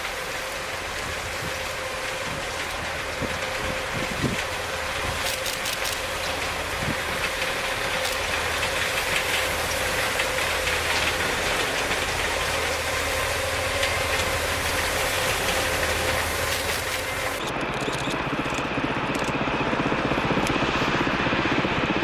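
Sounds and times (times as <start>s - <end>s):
rushing hiss: 0.0s - 17.4s
snow-clearing machine engine drone: 0.0s - 22.0s.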